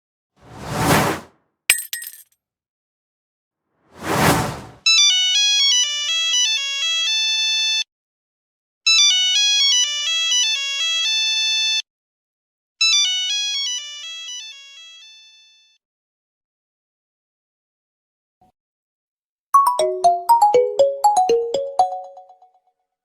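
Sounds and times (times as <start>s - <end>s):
electronic phone ringtone: 19.6s - 22.4s.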